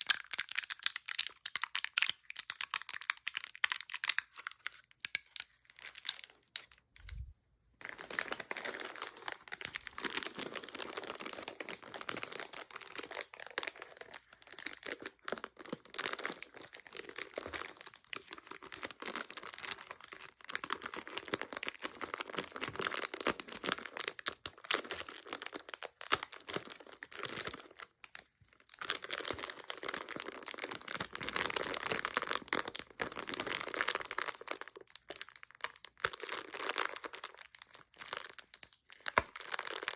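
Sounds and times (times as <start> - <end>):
plastic wrappers crinkling: 0.0 - 39.9.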